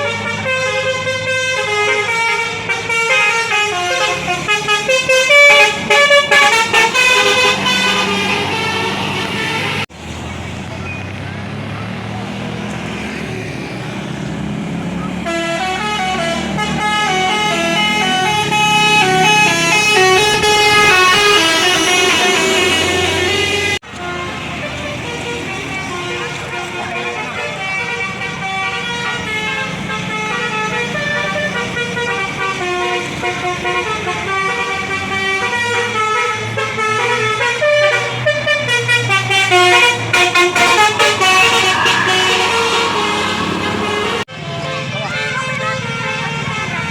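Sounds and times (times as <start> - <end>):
multi-tone air horn playing a tune: 0.0 - 9.9, 15.2 - 46.9
bus engine running: 0.0 - 46.9.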